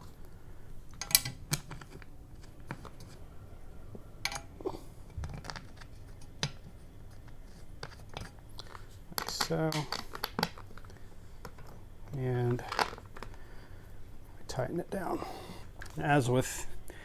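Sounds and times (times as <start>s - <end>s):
metal bolts clicking: 1.0s - 1.7s, 4.2s - 4.5s.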